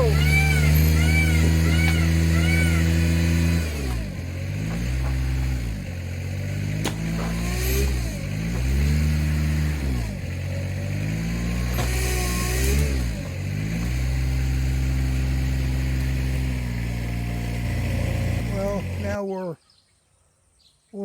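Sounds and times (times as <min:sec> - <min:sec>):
skid-steer engine working hard: 0:00.0 - 0:19.2
sharp crack: 0:06.4 - 0:10.0, 0:11.5 - 0:14.2.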